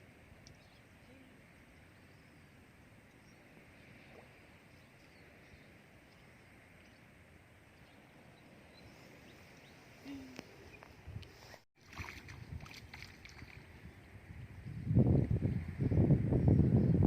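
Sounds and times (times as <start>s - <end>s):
faint outdoor hiss: 0.0s - 16.6s.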